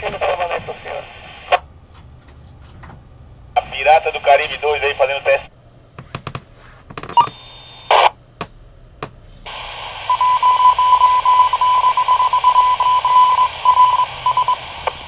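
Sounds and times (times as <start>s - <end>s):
hissy radio carrier: 0.0s - 1.7s, 3.6s - 6.1s, 7.0s - 8.2s, 9.5s - 10.8s, 13.4s - 15.0s
radio squelch clicks: 0.0s - 3.0s, 6.0s - 9.2s.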